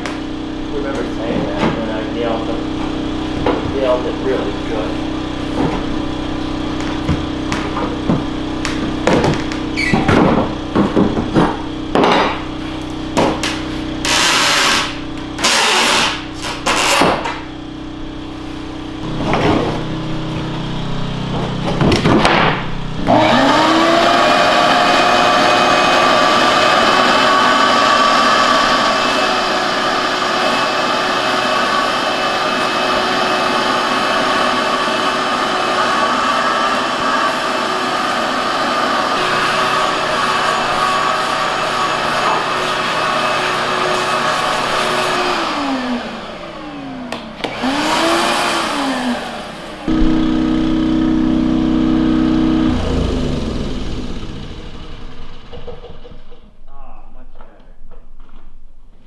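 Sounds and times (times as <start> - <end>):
motor whirring: 13.5 - 17.3.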